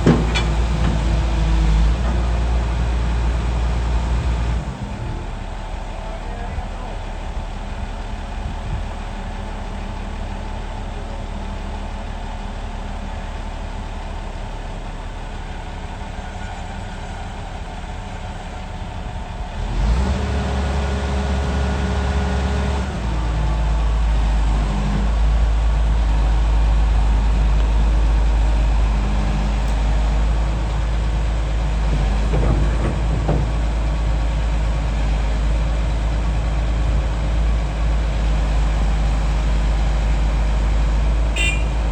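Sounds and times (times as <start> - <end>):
short knocks: 0.0 - 2.3, 31.8 - 34.4
excavator diesel engine running: 0.0 - 41.9.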